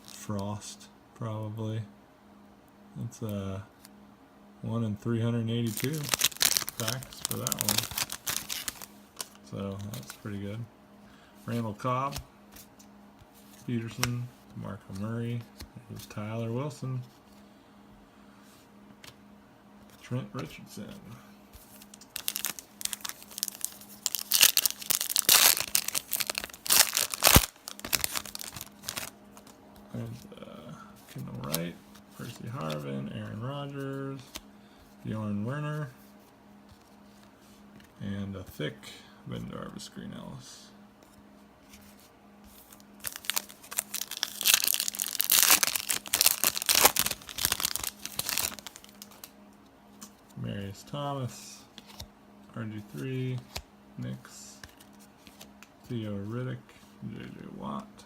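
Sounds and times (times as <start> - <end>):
card pack wrapper crinkling: 5.6 - 10.2, 21.7 - 30.3, 42.6 - 49.3.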